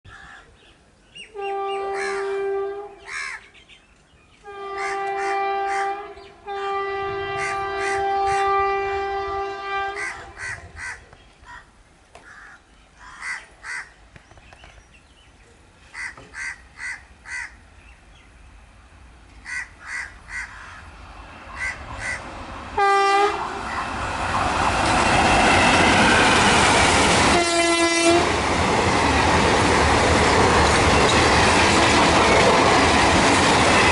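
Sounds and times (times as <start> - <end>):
locomotive horn blasts: 1.3 - 3.0, 4.4 - 10.4, 22.8 - 23.6, 27.3 - 28.4
train passing with wheel clatter: 1.4 - 12.3, 15.8 - 33.9
bird calls: 10.0 - 18.4.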